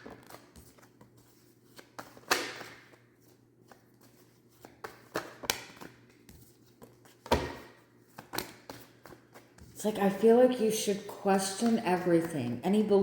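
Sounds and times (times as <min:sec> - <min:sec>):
cards being shuffled: 0:00.0 - 0:09.7.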